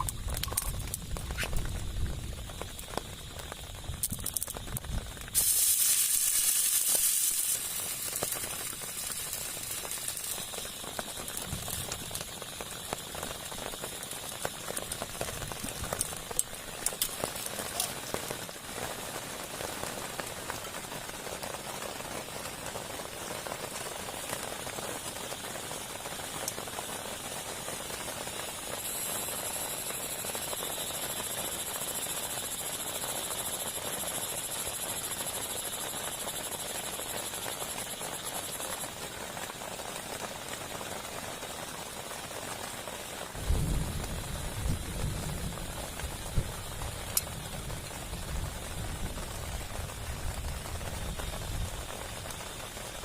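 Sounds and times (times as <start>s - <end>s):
pulsing buzzing frog or insect call: 0.0s - 18.2s, 28.3s - 38.9s
heavy rain falling: 0.0s - 53.0s.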